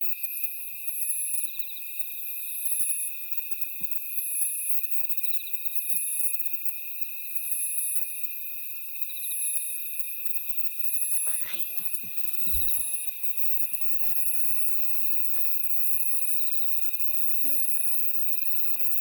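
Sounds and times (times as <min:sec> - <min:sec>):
insects trilling: 0:11.0 - 0:19.0.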